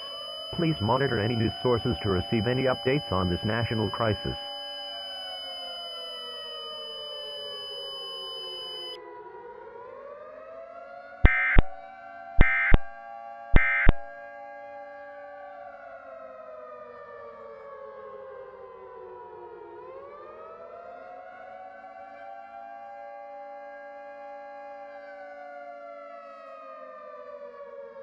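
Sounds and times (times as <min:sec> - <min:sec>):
screeching data bursts: 0:00.0 - 0:09.0, 0:11.3 - 0:11.8, 0:12.4 - 0:13.0, 0:13.6 - 0:14.1
siren wailing: 0:00.0 - 0:14.3.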